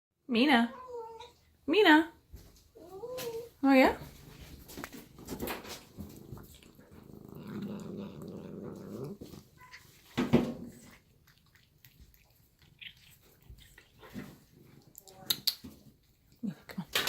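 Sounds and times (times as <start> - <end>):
cat growling low: 6.0 - 10.0.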